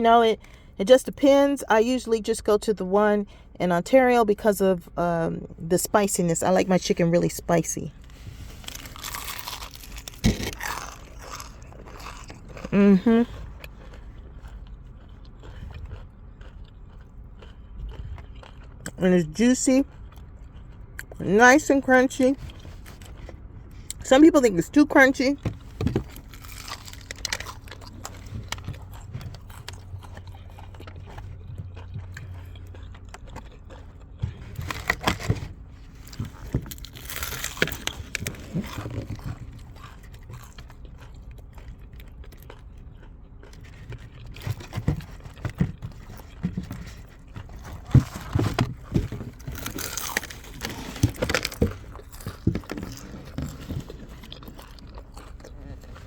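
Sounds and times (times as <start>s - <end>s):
person chewing crispy fried chicken: 8.0s - 19.0s, 19.9s - 21.2s, 25.6s - 56.0s.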